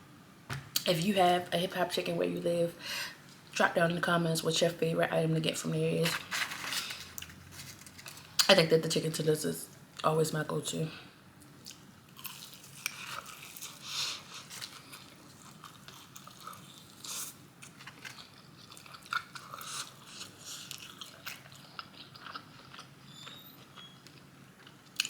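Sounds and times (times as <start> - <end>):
person chewing crispy food: 11.6 - 25.0.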